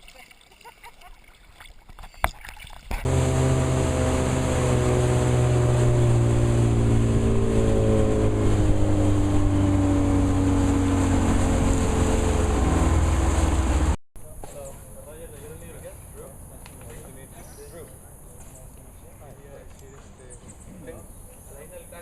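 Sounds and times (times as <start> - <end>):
water noise: 0.0 - 14.0
motorboat engine running: 3.0 - 14.0
rushing wind: 3.0 - 14.0.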